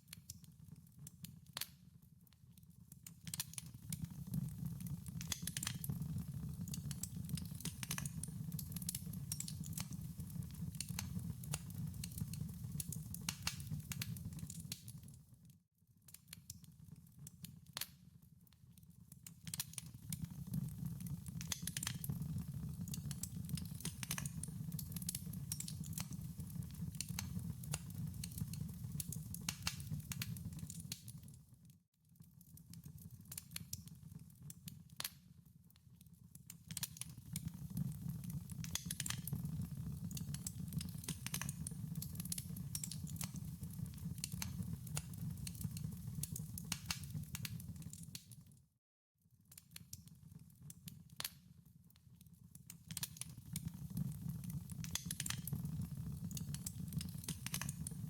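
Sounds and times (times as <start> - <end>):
wood fire crackling: 3.2 - 15.1, 19.2 - 31.4, 36.7 - 48.5, 52.9 - 58.0.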